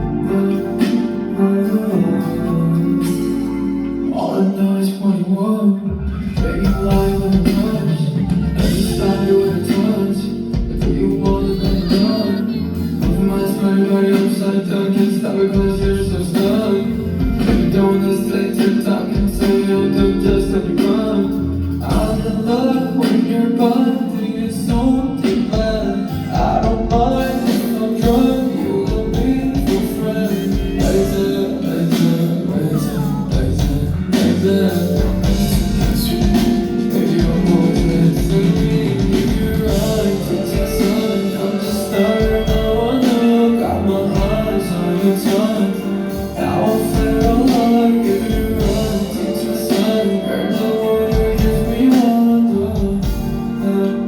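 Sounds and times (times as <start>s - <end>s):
live pop song over loudspeakers: 0.0s - 54.0s.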